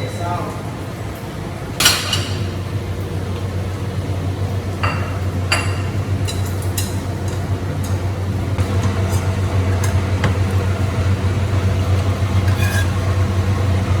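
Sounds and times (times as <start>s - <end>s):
steady low hum: 0.0s - 14.0s
dishes and utensils clinking: 1.8s - 2.6s, 4.8s - 8.1s, 12.0s - 13.4s
dishes clattering: 1.8s - 2.6s, 4.8s - 10.8s, 11.6s - 13.4s.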